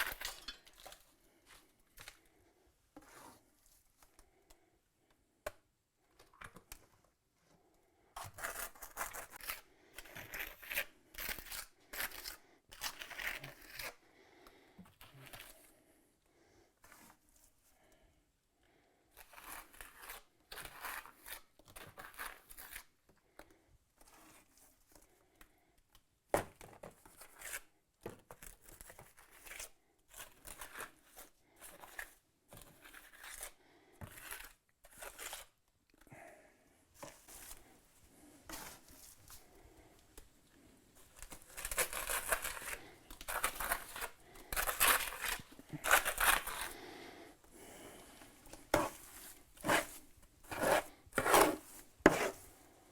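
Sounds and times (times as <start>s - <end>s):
trowel scraping mortar on brick: 41.2s - 46.8s, 48.5s - 52.6s.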